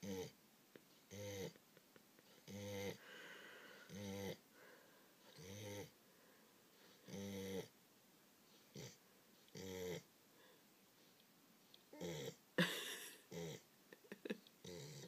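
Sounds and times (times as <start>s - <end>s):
dog snoring: 0.0s - 0.4s, 1.1s - 1.6s, 2.3s - 4.4s, 5.3s - 6.0s, 6.8s - 7.8s, 8.7s - 10.1s, 11.9s - 12.4s, 13.3s - 13.6s, 14.6s - 15.0s.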